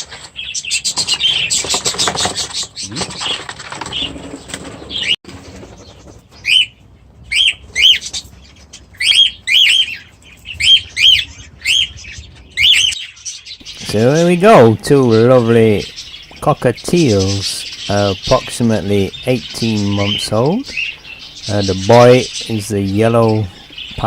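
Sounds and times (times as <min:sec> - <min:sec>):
bird chirps: 0:00.0 - 0:24.0
birds flapping wings: 0:00.9 - 0:06.4.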